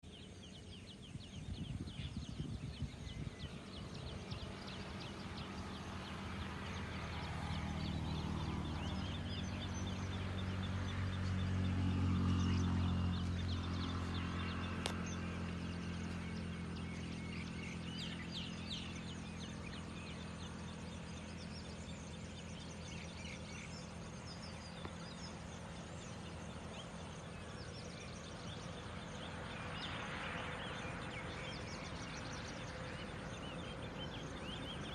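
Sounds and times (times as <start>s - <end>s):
distant engine hum: 0.0s - 34.9s
birds chirping and calling: 12.4s - 34.9s.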